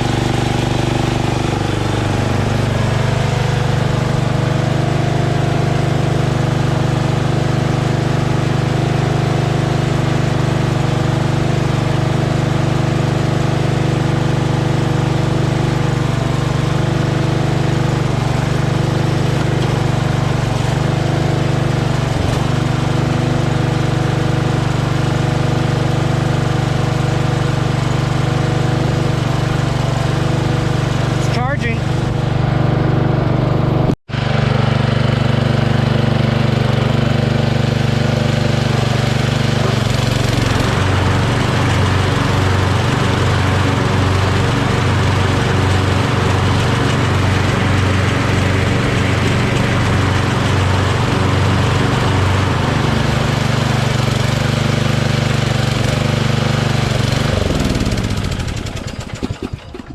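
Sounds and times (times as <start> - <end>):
lawn tractor engine running: 0.0 - 59.9.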